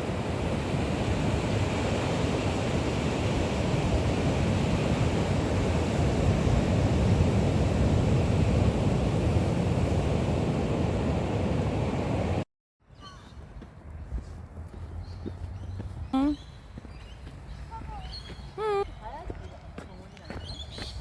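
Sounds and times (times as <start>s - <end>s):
ocean surf: 0.0s - 12.4s
wind buffeting microphone: 0.0s - 12.4s.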